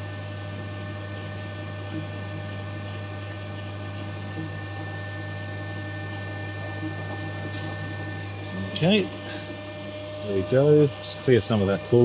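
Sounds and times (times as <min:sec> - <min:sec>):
coolant flowing: 0:00.0 - 0:08.2
metal lathe running: 0:00.0 - 0:12.0.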